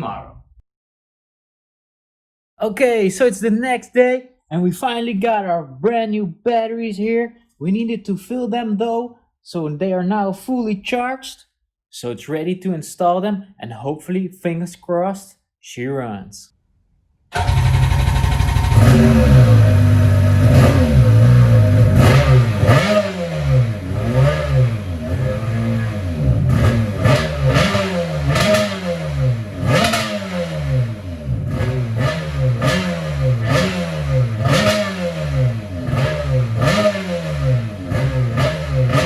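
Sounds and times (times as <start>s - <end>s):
jet ski engine idling and revving: 17.4s - 39.0s.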